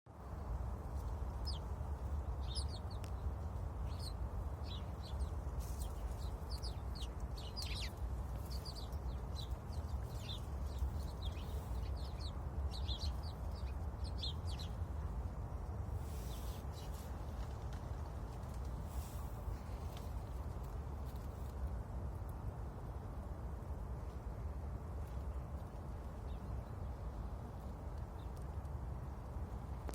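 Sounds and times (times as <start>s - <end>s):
sparrow chirping: 1.2s - 15.0s.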